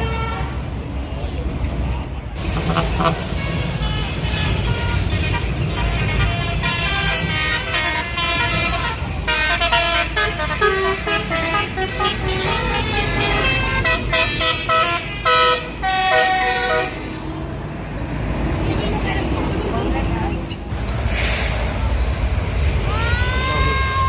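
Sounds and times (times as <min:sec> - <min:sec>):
bus horn playing a tune: 0:00.0 - 0:00.6, 0:02.5 - 0:17.2
low rumble of traffic: 0:00.0 - 0:24.0.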